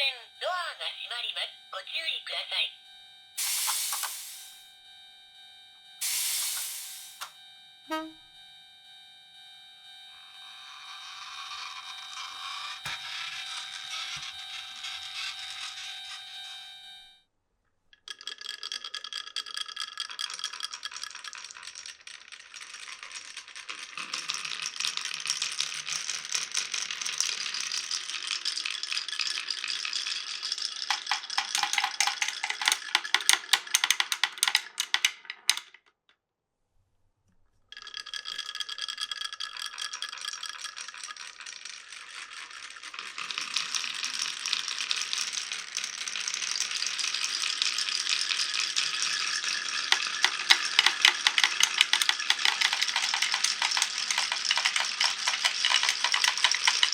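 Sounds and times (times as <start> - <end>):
glass marbles rattling on track: 3.4 - 4.6, 6.0 - 7.3, 10.6 - 16.2, 18.0 - 35.8, 37.7 - 56.9.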